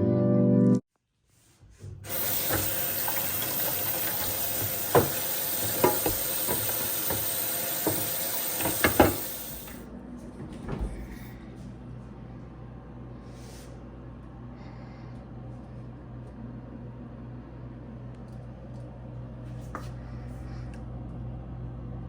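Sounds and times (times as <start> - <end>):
tap water running into sink: 2.0 - 9.8.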